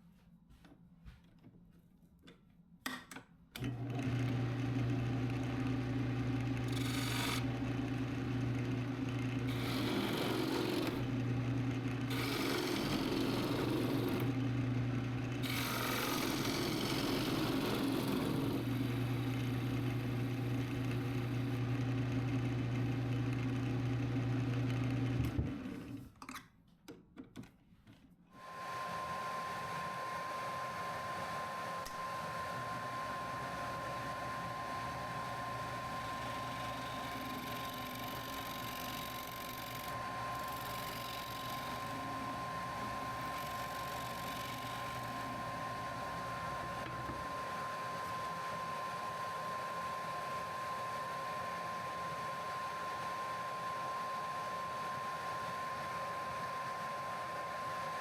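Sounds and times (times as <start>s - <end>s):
woodworking power tool running: 3.6s - 26.0s, 28.4s - 58.0s.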